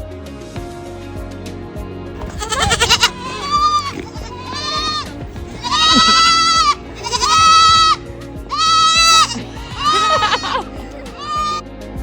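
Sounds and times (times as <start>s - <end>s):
soft background music: 0.0s - 12.0s
goats bleating: 2.2s - 11.6s.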